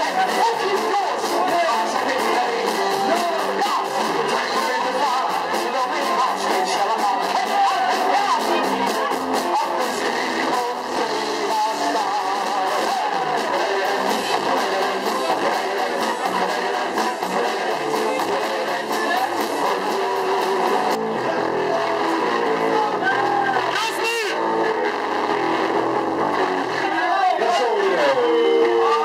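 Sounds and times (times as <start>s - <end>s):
drums: 0.0s - 29.0s
electric guitar: 0.0s - 29.0s.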